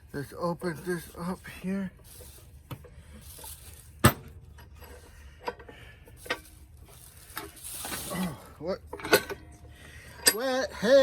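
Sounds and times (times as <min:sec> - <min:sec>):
metal vise clanking and clicking: 0:08.9 - 0:10.5.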